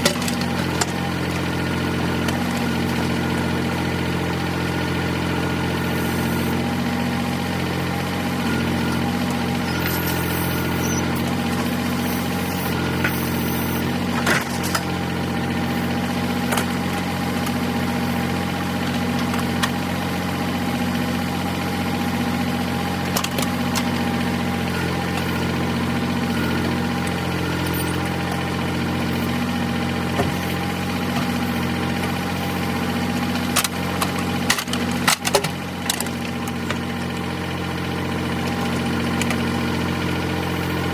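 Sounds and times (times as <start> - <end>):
engine running at low speed: 0.0 - 40.9.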